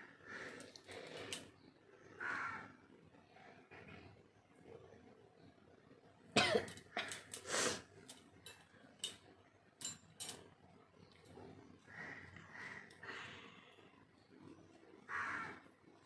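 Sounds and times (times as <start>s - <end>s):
sniffs: 7.4s - 7.9s.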